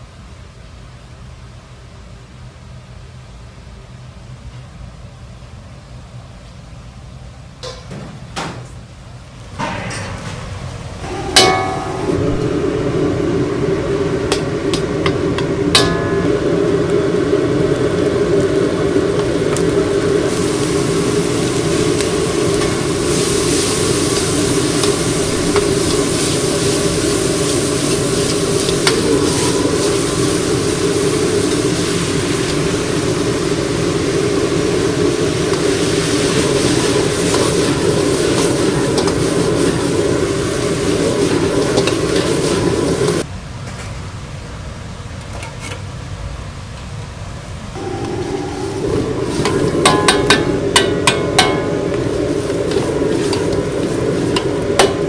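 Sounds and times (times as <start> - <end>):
low steady hum: 9.1 - 33.4, 47.8 - 55.0
food sizzling and frying: 9.3 - 43.3, 47.8 - 55.0.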